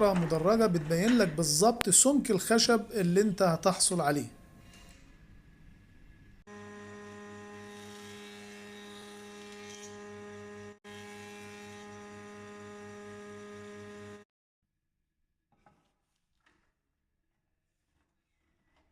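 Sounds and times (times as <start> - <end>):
planer motor humming: 6.5 - 14.2.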